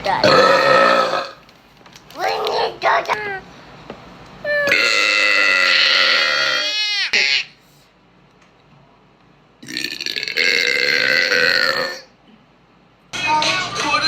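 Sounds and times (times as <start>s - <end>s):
woman burping: 0.2s - 1.4s, 4.5s - 6.8s, 9.6s - 12.1s.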